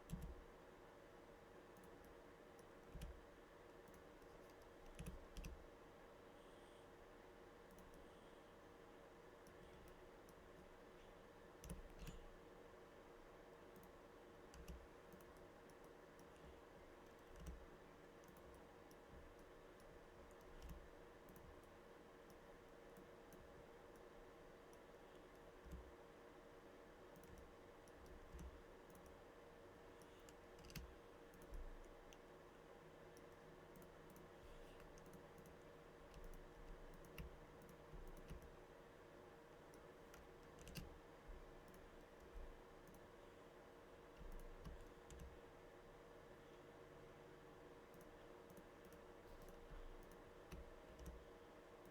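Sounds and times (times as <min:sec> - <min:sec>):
low steady hum: 0:00.0 - 0:51.9
mouse and keyboard clicks: 0:11.6 - 0:12.3.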